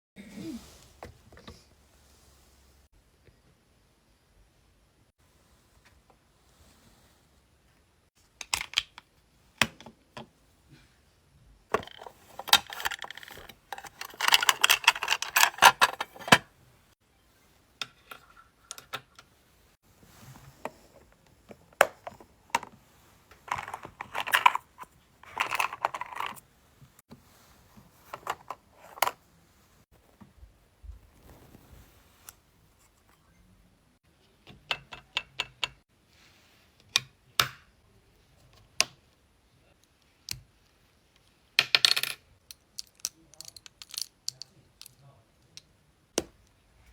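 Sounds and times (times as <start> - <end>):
small hard objects clicking and rattling: 11.8 - 16.4, 41.8 - 45.0.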